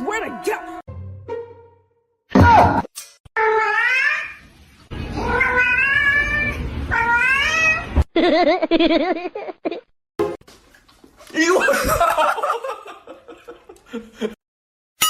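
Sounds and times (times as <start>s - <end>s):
cat meowing: 3.4s - 4.4s, 5.2s - 8.0s.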